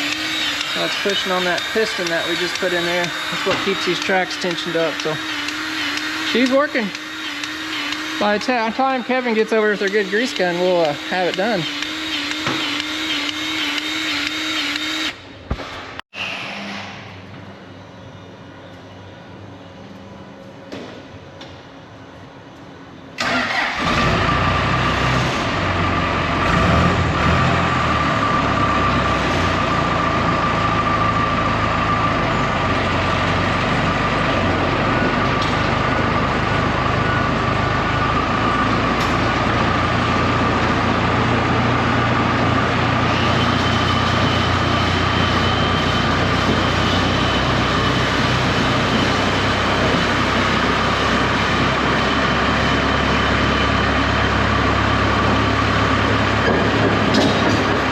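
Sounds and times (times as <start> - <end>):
diesel engine running: 0.0 - 15.0, 23.2 - 57.9
higher whine: 0.0 - 16.0
high whine: 0.0 - 20.6.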